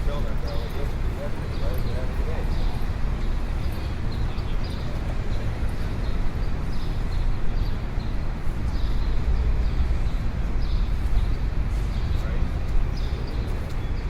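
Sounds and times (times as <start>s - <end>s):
traffic rumble: 0.0s - 14.0s.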